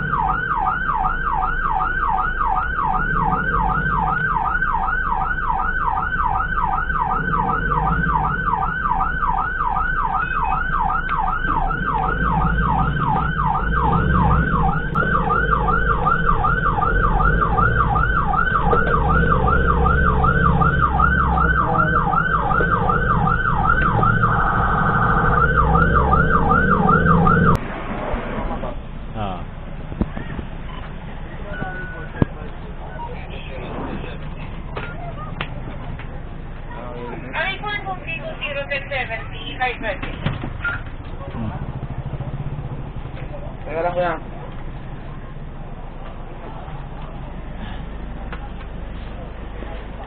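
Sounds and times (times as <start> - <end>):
emergency siren yelping: 0.0 - 27.6
road rumble: 0.0 - 50.0
vehicle engine: 0.0 - 50.0.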